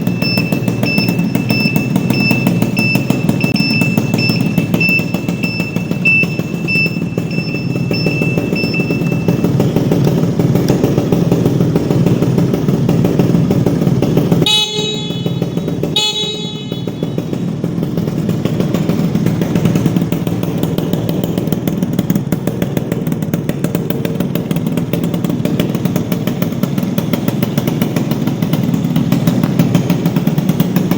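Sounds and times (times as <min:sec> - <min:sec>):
motorcycle horn honks: 0:00.0 - 0:12.3, 0:13.0 - 0:20.1
motorcycle engine idling: 0:00.0 - 0:30.9.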